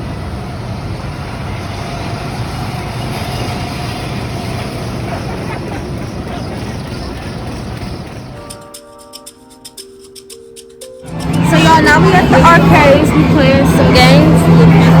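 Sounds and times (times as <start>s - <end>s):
go-kart engine running: 3.3s - 8.7s.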